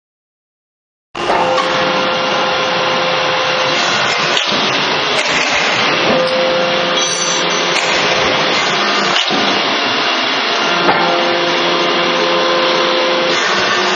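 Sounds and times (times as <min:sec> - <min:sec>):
hydraulic machine motor and pump: 0:03.6 - 0:10.3.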